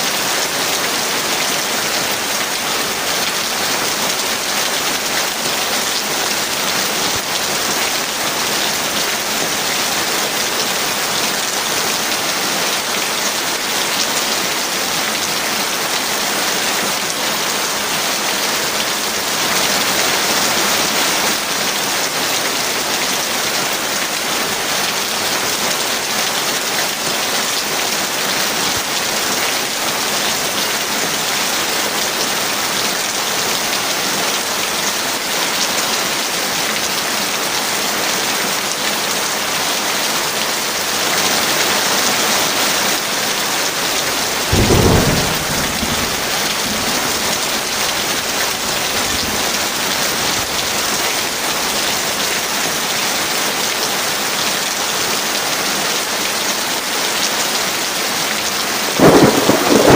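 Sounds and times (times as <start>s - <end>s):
heavy rain: 0.0s - 59.9s
thunder clap and rumble: 44.5s - 49.3s, 59.0s - 59.9s.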